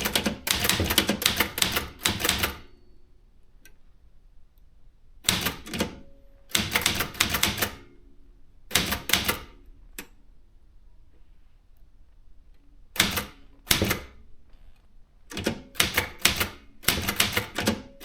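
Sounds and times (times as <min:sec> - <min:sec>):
typewriter keystrokes: 0:00.0 - 0:02.7, 0:05.2 - 0:07.9, 0:08.7 - 0:09.6, 0:13.0 - 0:14.2, 0:15.3 - 0:18.0.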